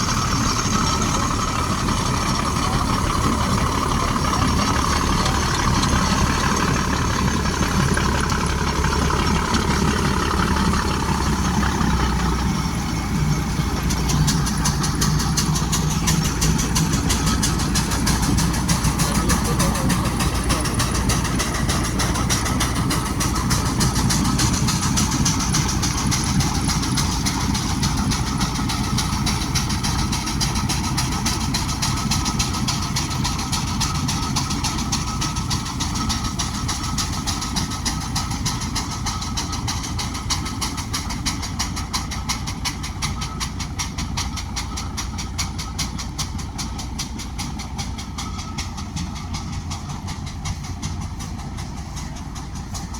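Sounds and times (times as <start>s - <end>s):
heavy truck engine running: 0.0s - 52.9s.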